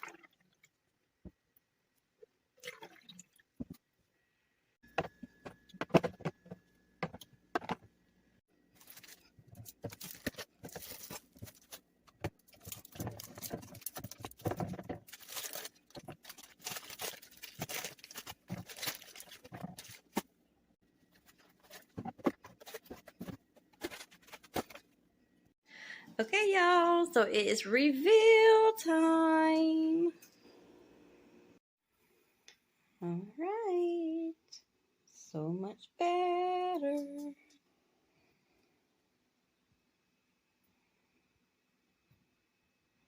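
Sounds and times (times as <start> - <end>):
plastic containers clicking and knocking: 4.9 - 7.9, 9.6 - 16.8
packaging rustling: 8.7 - 20.3, 21.1 - 25.0.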